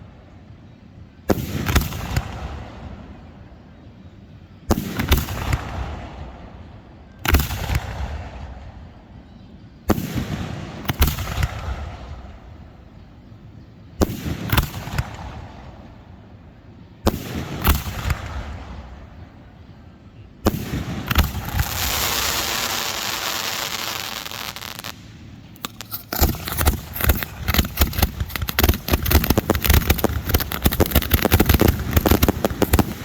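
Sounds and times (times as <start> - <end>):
fireworks bangs and cracks: 20.5 - 33.0.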